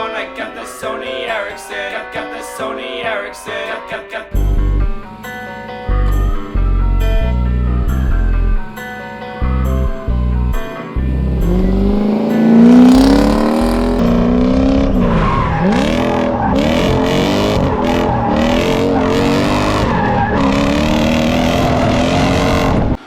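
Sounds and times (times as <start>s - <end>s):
car engine revving: 4.4s - 23.0s
tyres squealing and skidding: 10.6s - 23.0s.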